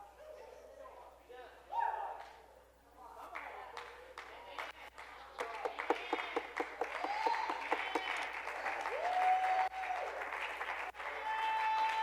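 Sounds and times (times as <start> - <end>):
held calls over clapping: 4.9 - 12.0
congregation applauding: 5.4 - 12.0.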